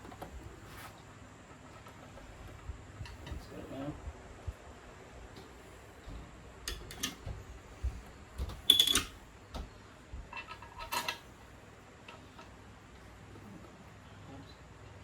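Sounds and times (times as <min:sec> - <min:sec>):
metal tools clinking and clanking: 0:08.6 - 0:09.2, 0:10.3 - 0:11.3.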